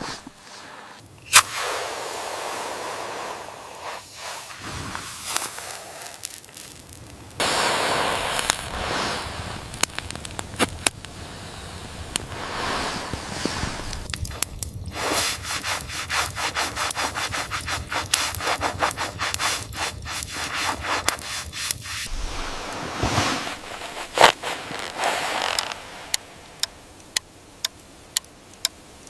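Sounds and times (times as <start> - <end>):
shovel scraping snow: 0.0 - 6.6, 7.4 - 9.6, 12.3 - 14.1, 15.0 - 26.5.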